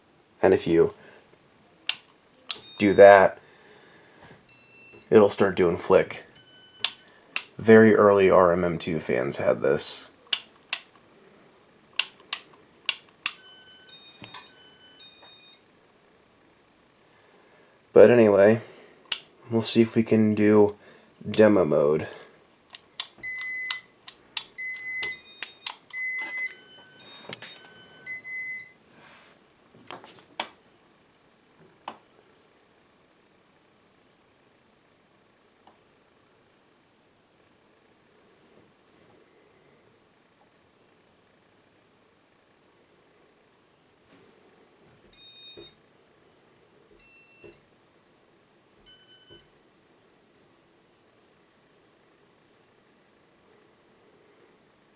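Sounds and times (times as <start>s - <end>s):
button clicks: 1.9s - 2.9s, 6.8s - 7.6s, 10.4s - 10.9s, 12.0s - 13.4s, 22.7s - 26.0s
short electronic beeps: 2.5s - 3.2s
electronic beeps: 2.5s - 3.3s, 6.3s - 7.1s.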